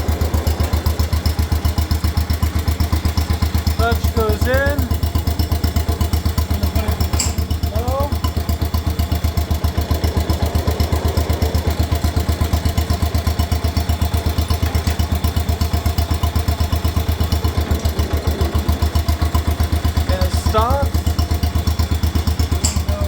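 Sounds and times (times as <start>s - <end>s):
small engine running: 0.0s - 23.0s.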